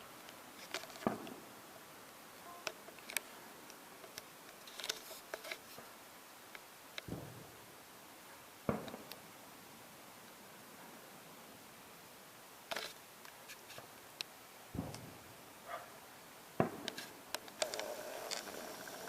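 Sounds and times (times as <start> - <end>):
distant firework booms: 7.1 - 7.6, 8.7 - 9.1, 14.7 - 15.3, 16.6 - 16.9
sharp crackles and clicks: 16.6 - 19.0.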